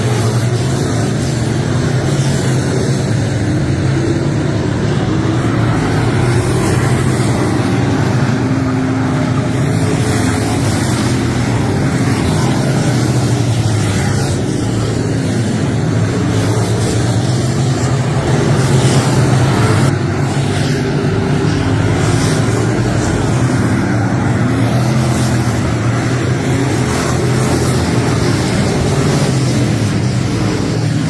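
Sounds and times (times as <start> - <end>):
large engine droning: 0.0 - 31.0.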